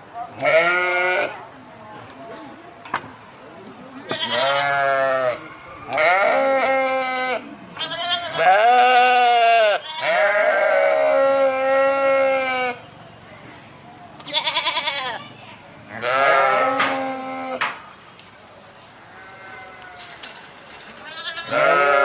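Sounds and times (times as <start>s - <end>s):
sheep bleating: 0.4s - 1.4s, 4.1s - 12.8s, 14.2s - 15.3s, 15.9s - 17.6s, 21.0s - 22.0s.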